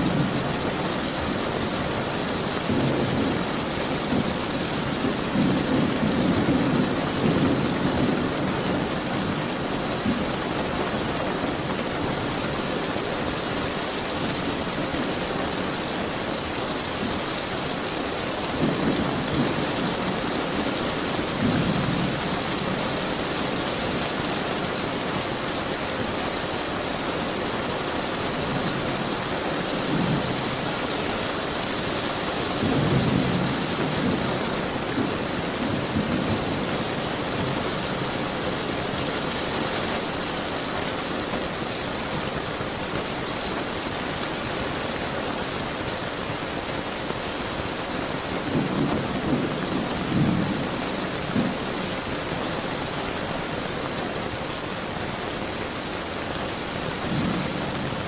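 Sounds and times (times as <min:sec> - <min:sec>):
steady rain falling: 0:00.0 - 0:58.0
thunder rumbling: 0:02.4 - 0:13.1.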